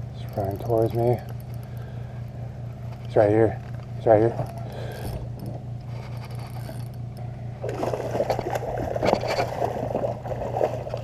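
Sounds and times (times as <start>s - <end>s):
low motor hum: 0.0s - 11.0s
fish splashing in water: 7.6s - 11.0s.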